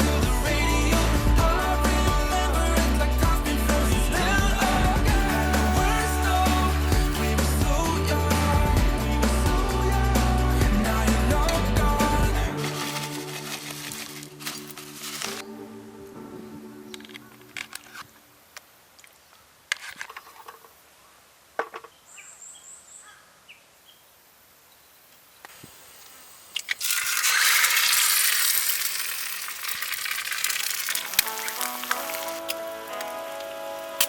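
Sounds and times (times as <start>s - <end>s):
loud hissing: 25.4s - 34.0s.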